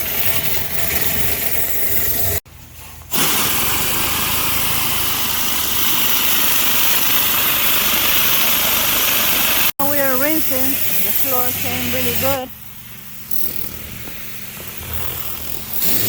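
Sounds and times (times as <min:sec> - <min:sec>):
pressure washer engine drone: 0:00.0 - 0:02.4, 0:03.1 - 0:16.0
high-pressure water spray hiss: 0:03.1 - 0:16.0.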